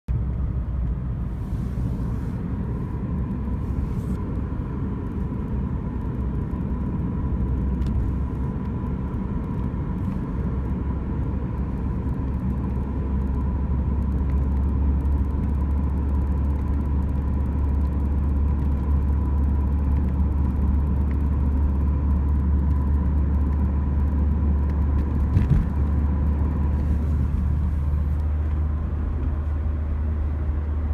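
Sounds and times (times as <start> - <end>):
car cabin road rumble: 0.1 - 30.9.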